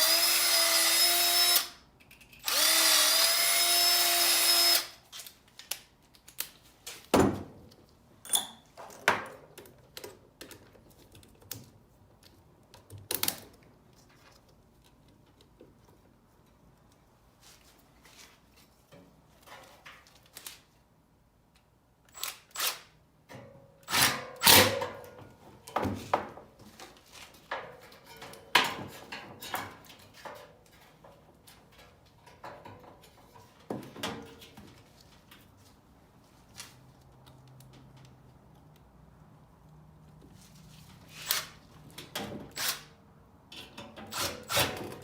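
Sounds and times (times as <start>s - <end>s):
hand tools and metal parts clanking: 8.2s - 11.3s, 23.3s - 34.9s, 43.5s - 45.0s.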